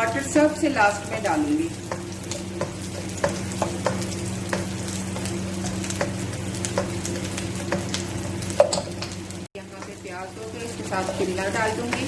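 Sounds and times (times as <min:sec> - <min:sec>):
onion sizzling in oil: 0:00.0 - 0:12.0
spatula knocking against pan: 0:01.8 - 0:05.3.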